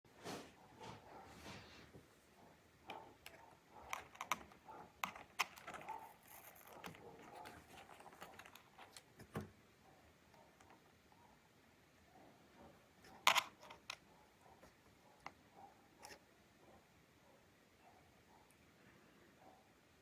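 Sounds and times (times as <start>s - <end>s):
laptop keyboard clicks: 2.9s - 9.5s.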